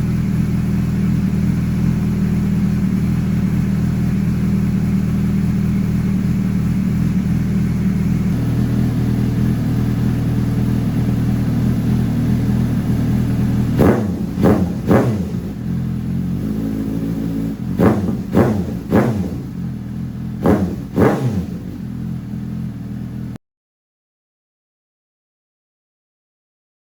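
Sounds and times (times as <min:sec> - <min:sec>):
motorcycle engine idling and revving: 0:00.0 - 0:23.4.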